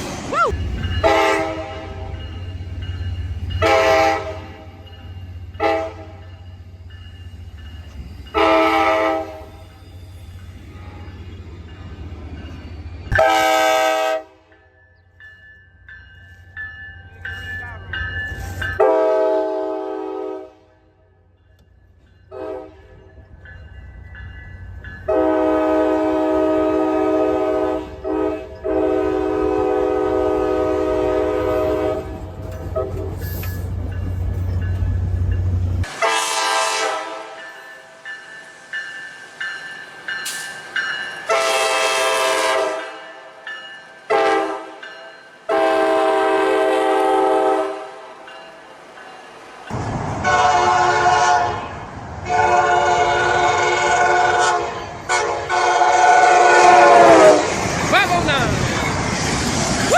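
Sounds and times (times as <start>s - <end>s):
low train rumble: 0.0s - 59.9s
train horn chord blasts: 1.0s - 2.2s, 3.6s - 4.8s, 5.5s - 6.3s, 8.3s - 9.6s, 13.1s - 14.6s, 18.8s - 21.0s, 22.3s - 23.0s, 25.1s - 33.1s, 35.8s - 37.6s, 41.3s - 43.3s, 44.0s - 44.8s, 45.5s - 48.1s, 50.2s - 57.5s.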